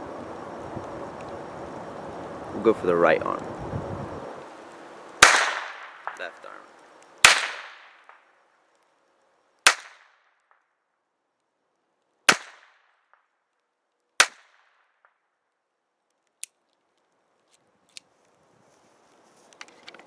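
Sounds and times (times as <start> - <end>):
pistol shots with echo: 5.2 - 6.4, 7.2 - 8.2, 12.3 - 12.8.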